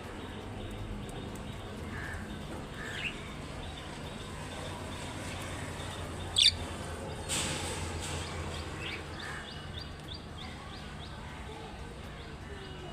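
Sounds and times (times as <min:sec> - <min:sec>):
budgerigars chirping: 0:05.8 - 0:06.7.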